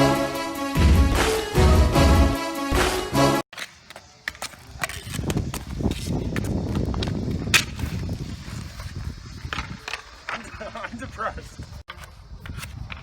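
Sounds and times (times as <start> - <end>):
hockey sticks and ball clicking: 3.5 - 8.0, 8.8 - 11.1.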